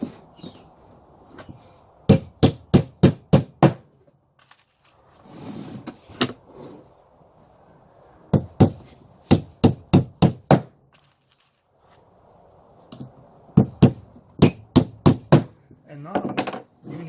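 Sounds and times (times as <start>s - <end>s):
hammer striking nail: 9.3s - 10.8s, 13.6s - 15.6s.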